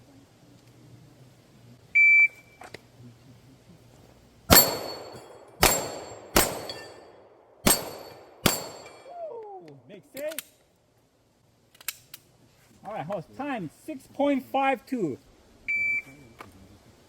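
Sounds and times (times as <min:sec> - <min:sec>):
gunshots: 0:04.5 - 0:09.1
metallic ring of steel plates: 0:04.5 - 0:09.1.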